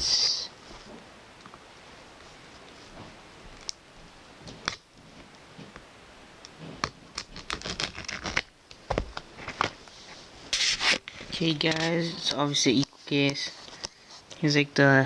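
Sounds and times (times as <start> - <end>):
wrapping being handled: 7.1 - 8.5.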